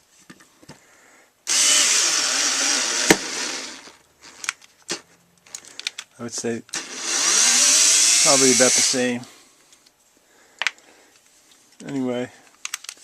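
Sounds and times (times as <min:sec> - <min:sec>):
cordless screwdriver driving screw: 0:01.5 - 0:04.0, 0:06.7 - 0:09.1.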